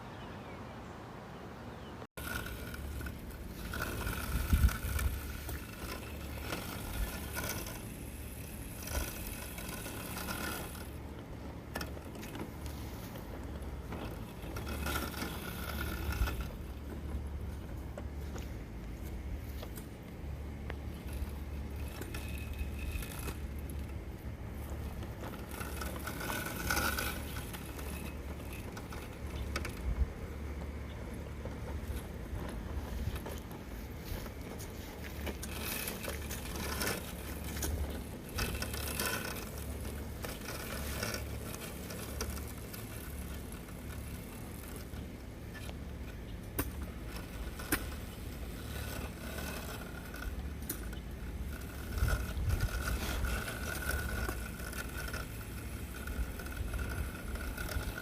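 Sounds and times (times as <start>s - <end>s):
robotic lawn mower running: 1.8s - 58.0s
small rattles and clicks: 2.2s - 58.0s.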